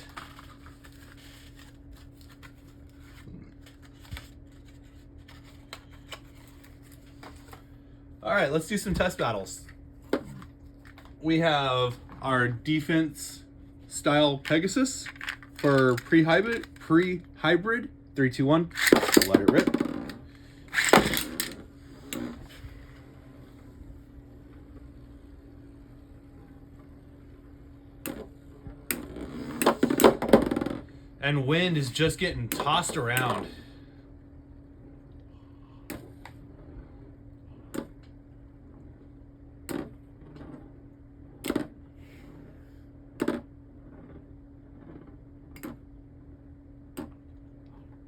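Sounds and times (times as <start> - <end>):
steady low hum: 0.0 - 48.0
spinning tops whirring: 18.7 - 21.6.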